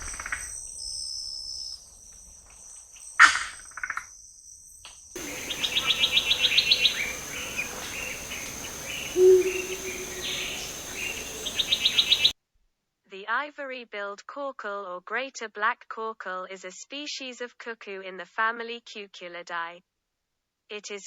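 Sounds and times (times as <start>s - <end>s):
bird calls: 5.2s - 12.3s
deep bird hoot: 5.2s - 12.3s
fast high pulsed bird notes: 5.2s - 12.3s
high insect drone: 5.2s - 12.3s.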